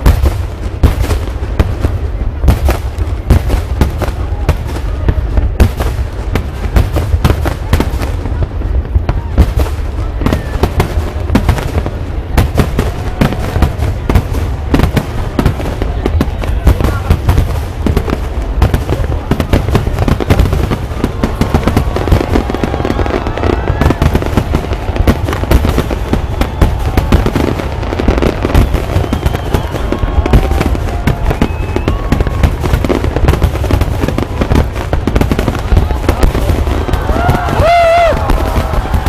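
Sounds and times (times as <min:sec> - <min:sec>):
fireworks bursting: 0:00.0 - 0:39.0
crowd calling out: 0:07.9 - 0:39.0.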